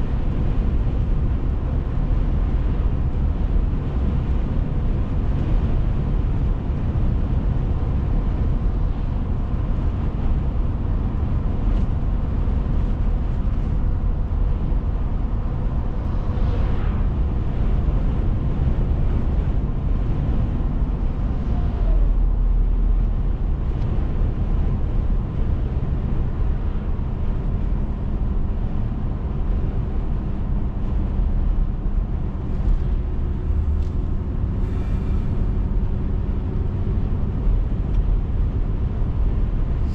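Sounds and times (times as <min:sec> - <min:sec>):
car engine and tyre rumble: 0:00.0 - 0:39.9.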